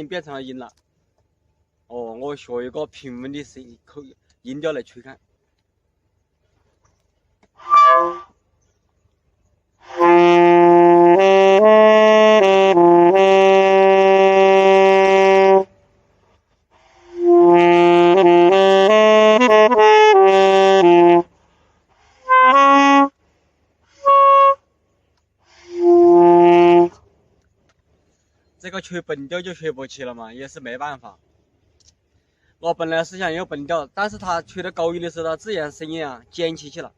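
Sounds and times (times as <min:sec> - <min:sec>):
wind instrument held notes: 0:07.6 - 0:08.3, 0:09.8 - 0:15.7, 0:16.7 - 0:23.2, 0:23.9 - 0:24.7, 0:25.4 - 0:27.0.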